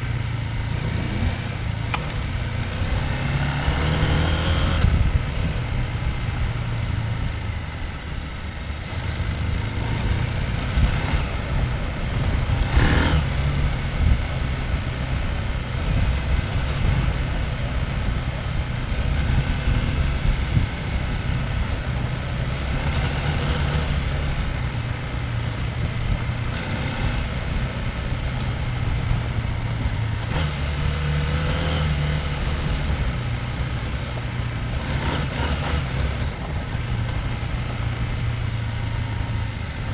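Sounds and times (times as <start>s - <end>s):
motorcycle engine at low revs: 0.0s - 39.9s.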